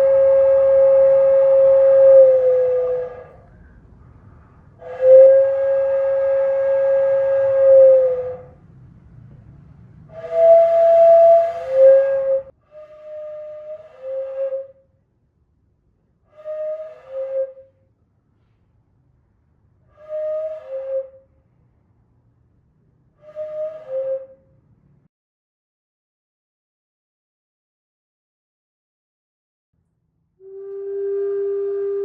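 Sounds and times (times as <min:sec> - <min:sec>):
breathy flute-like notes: 0:00.0 - 0:03.7, 0:04.8 - 0:08.6, 0:10.1 - 0:14.8, 0:30.4 - 0:32.0.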